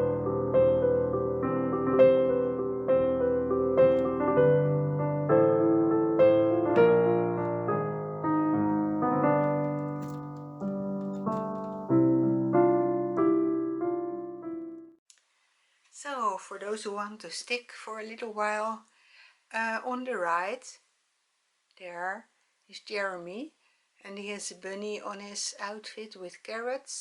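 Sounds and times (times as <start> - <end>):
slow gentle piano piece: 0.0 - 15.0.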